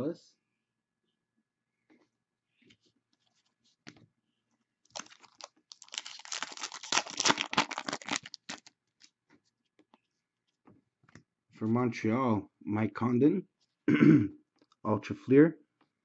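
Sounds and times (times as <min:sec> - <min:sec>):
packaging crinkling and rustling: 0:04.9 - 0:09.2.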